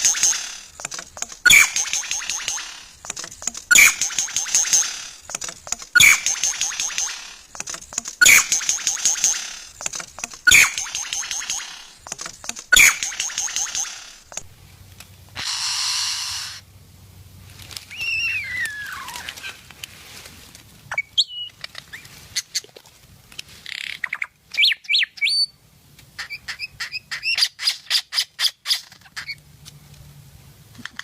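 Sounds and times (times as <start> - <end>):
bird whistling: 0.0 - 5.0, 5.9 - 7.6, 8.2 - 9.6, 10.4 - 12.1, 12.7 - 14.0, 17.9 - 19.3
bird squawk: 0.0 - 7.6, 8.2 - 14.4, 15.4 - 16.6
sharp clipped bird notes: 0.0 - 14.5.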